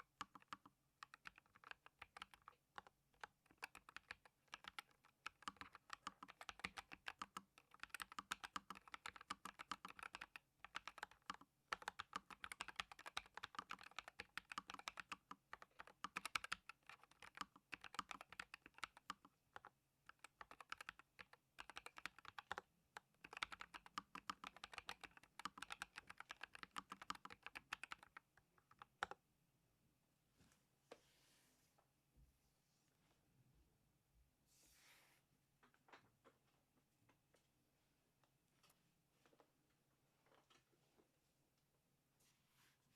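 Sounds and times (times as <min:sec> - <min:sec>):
typing on mechanical keyboard: 0:00.0 - 0:29.2.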